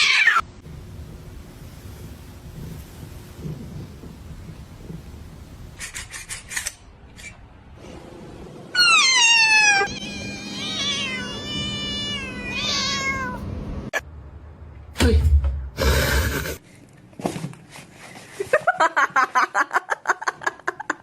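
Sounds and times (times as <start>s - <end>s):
cat meowing: 8.8s - 13.5s.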